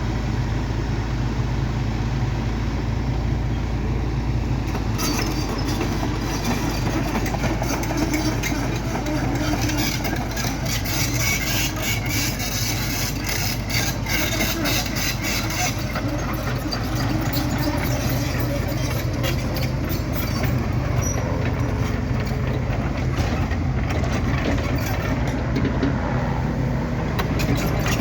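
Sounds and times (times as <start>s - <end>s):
excavator diesel engine humming: 0.0s - 28.0s
rattling clatter of knocks: 4.7s - 26.0s.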